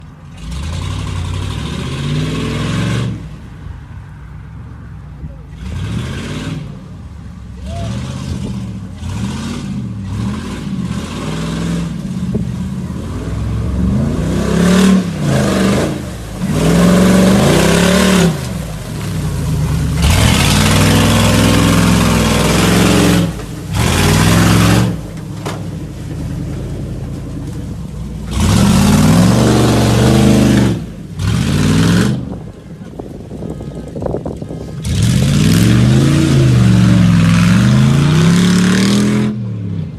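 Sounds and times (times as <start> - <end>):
vehicle engine revving hard: 0.4 - 3.3, 5.6 - 6.8, 7.8 - 12.4, 13.1 - 25.2, 28.3 - 32.4, 34.8 - 39.6.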